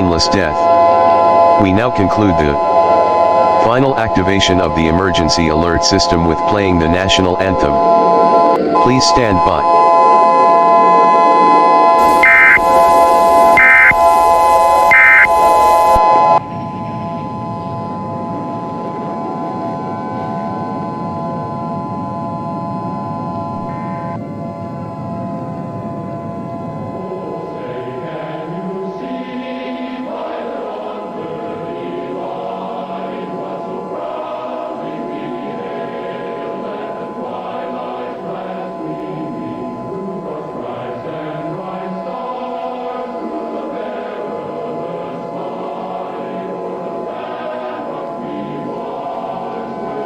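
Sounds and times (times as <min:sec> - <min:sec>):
harsh electronic alert tone: 0:00.0 - 0:28.2
faint steady tone: 0:00.0 - 0:31.2
high data chirps: 0:07.5 - 0:16.4
choir singing an anthem: 0:26.8 - 0:50.0.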